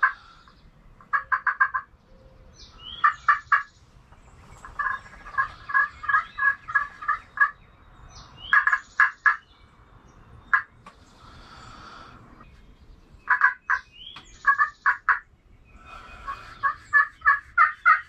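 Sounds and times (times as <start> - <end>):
turkey yelps: 1.0 - 1.9, 2.9 - 3.7, 4.7 - 7.6, 8.5 - 9.4, 13.3 - 15.2, 16.1 - 18.0.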